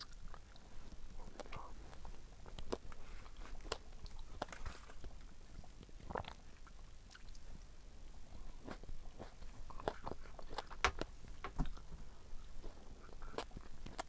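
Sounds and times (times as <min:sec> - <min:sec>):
chewing strawberries: 0:00.0 - 0:14.0.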